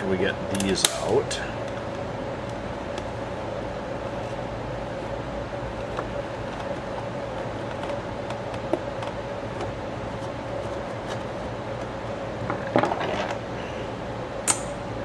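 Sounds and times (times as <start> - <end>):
steady background hum: 0.0 - 15.0
clicks and scraping of plastic parts: 12.5 - 13.4.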